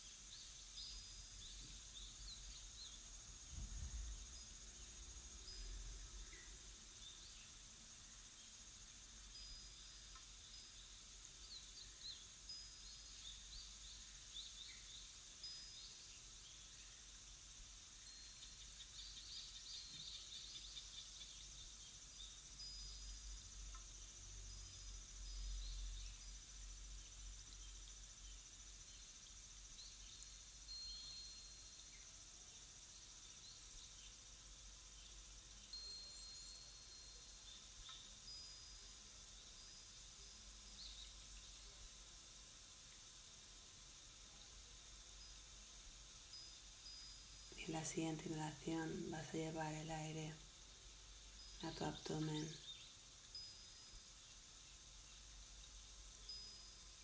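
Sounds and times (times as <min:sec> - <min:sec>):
steady high hiss: 0:00.0 - 0:57.0
small birds chirping: 0:06.2 - 0:24.0, 0:46.3 - 0:57.0.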